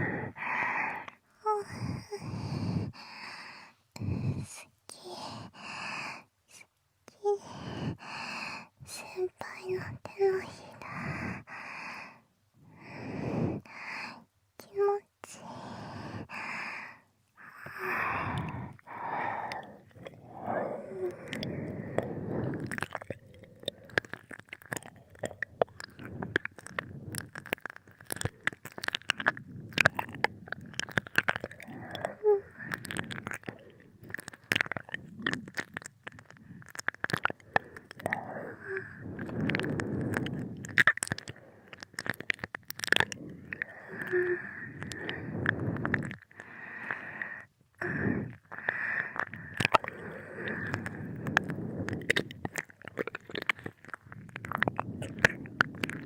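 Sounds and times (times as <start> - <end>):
soft breathing: 0.0 - 6.3, 7.2 - 56.0
wet mouth clicks and smacks: 17.4 - 56.0.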